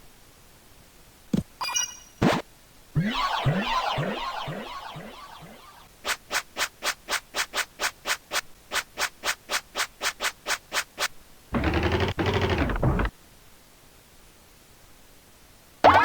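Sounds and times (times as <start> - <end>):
cartoon falling tones: 3.0 - 5.8.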